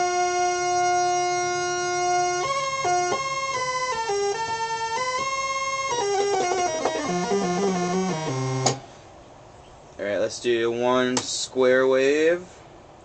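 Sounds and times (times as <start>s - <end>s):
buzzy analog synthesizer notes: 0.0s - 8.9s.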